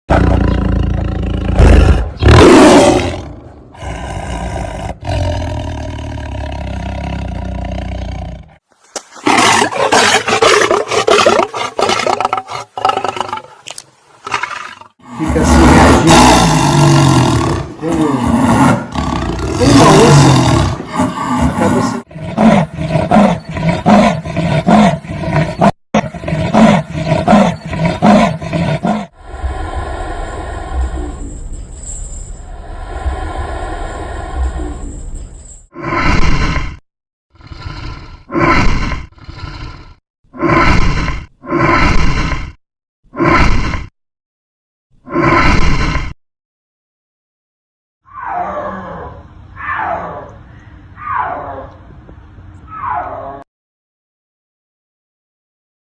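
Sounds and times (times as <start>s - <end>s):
wild cat roaring: 0.1s - 8.6s, 14.3s - 31.4s, 35.7s - 36.8s, 37.4s - 43.9s, 45.1s - 46.2s, 48.1s - 50.4s
wild cat growling: 14.2s - 31.2s, 35.8s - 43.9s.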